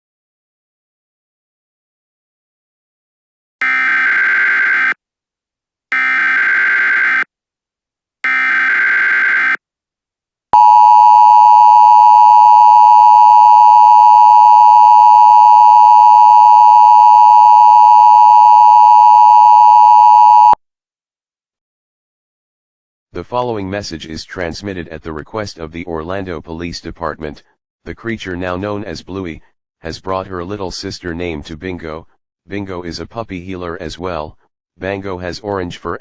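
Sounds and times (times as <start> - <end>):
buzzy data tone bursts: 3.6 - 5.0, 5.9 - 7.3, 8.3 - 9.6
two-tone alert signal: 3.6 - 5.0, 5.9 - 7.3, 8.2 - 9.6, 10.6 - 20.6.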